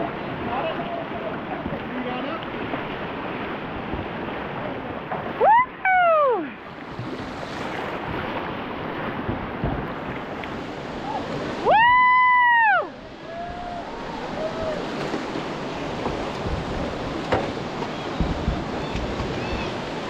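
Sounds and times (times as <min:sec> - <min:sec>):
river water rushing: 0:00.0 - 0:20.0
people whooping: 0:05.4 - 0:06.5, 0:11.0 - 0:14.9.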